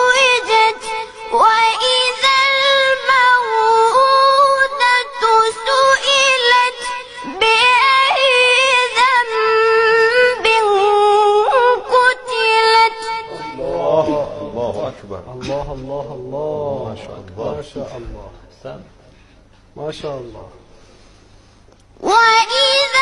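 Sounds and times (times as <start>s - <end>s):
child chanting recitation: 0.0s - 14.8s, 22.0s - 23.0s.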